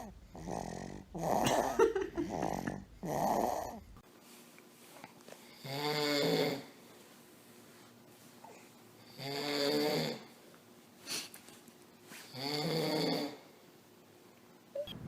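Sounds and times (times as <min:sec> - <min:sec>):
man snoring: 0:00.0 - 0:03.8, 0:05.6 - 0:06.7, 0:09.0 - 0:10.3, 0:12.3 - 0:13.4.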